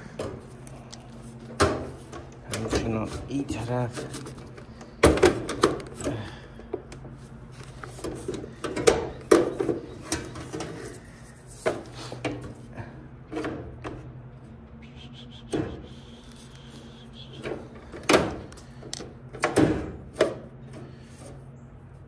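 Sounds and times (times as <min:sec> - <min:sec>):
steady low hum: 0:00.0 - 0:22.0
knocks and clicks of panel parts: 0:04.5 - 0:06.1, 0:07.9 - 0:10.8, 0:17.4 - 0:20.5.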